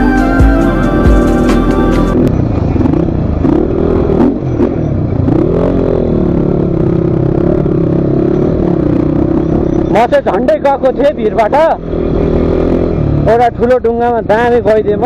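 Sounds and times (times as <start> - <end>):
background music: 0.0 - 2.2
motorcycle engine revving: 0.0 - 15.0.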